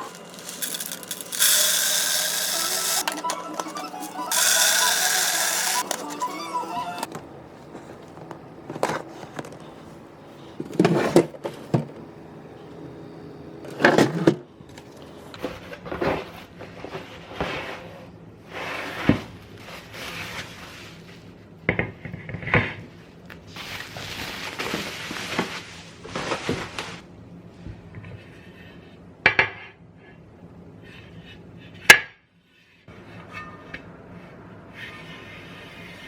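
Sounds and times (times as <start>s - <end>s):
scraping and rustling: 0.0s - 9.9s.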